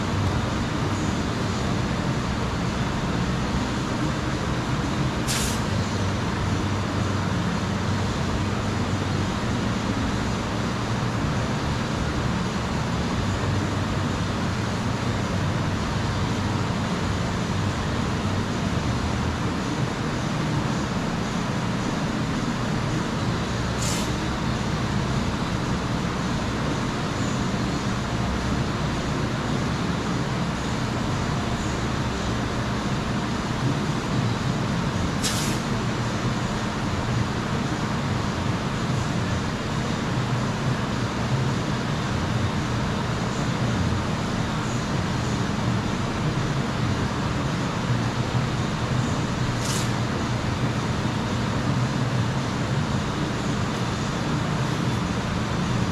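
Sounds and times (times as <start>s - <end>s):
steady mechanical running noise: 0.0s - 55.9s
brief high hiss: 5.2s - 5.7s, 23.8s - 24.2s, 35.2s - 35.7s, 49.6s - 50.0s.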